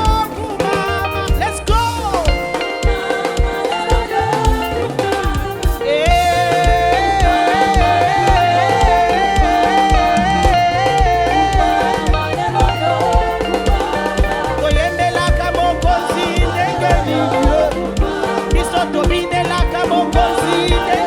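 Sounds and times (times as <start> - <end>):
gospel band playing: 0.0 - 21.0
lead melody line: 0.0 - 21.0.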